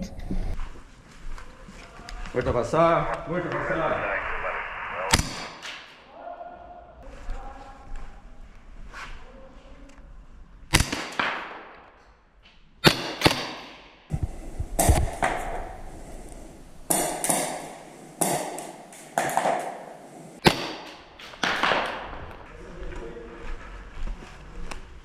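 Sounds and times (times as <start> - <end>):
airsoft gunshots cracking: 12.8 - 13.9.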